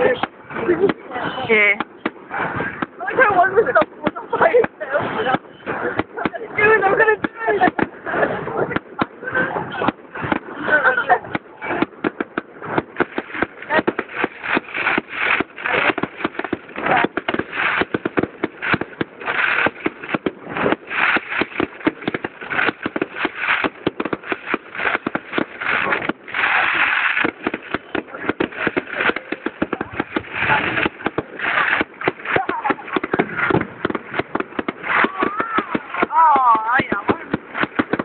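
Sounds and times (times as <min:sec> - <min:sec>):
fireworks hiss: 0:00.0 - 0:03.8, 0:04.4 - 0:38.0
fireworks bangs and crackling: 0:00.0 - 0:38.0.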